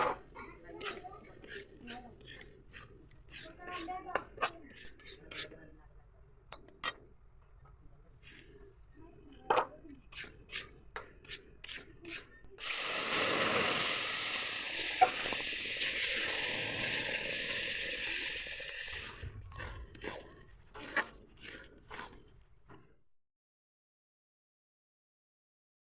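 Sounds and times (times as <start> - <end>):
loud sizzle in hot pan: 12.6 - 19.0.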